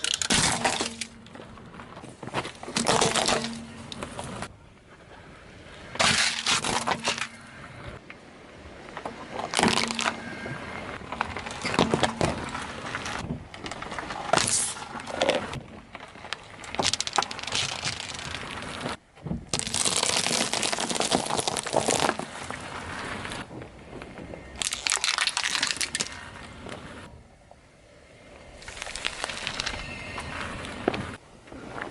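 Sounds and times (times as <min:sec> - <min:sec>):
objects crunching under car tyre: 0:00.0 - 0:04.5, 0:05.8 - 0:08.0, 0:08.8 - 0:27.1, 0:28.4 - 0:31.9.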